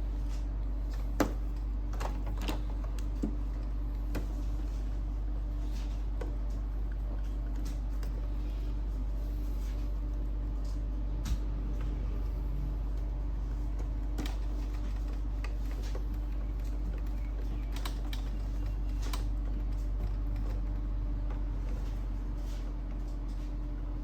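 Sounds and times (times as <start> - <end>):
steady low hum: 0.0 - 24.0
plastic parts clicking: 13.8 - 20.7.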